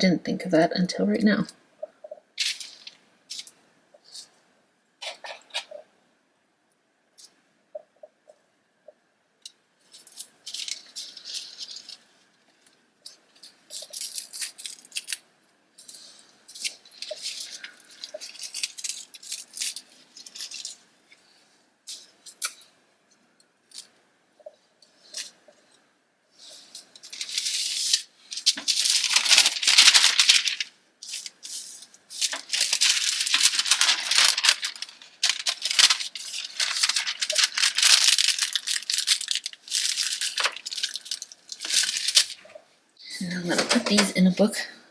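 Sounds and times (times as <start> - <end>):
wax paper crinkling: 2.4 - 4.3, 9.8 - 15.2, 15.9 - 21.2, 26.4 - 42.6.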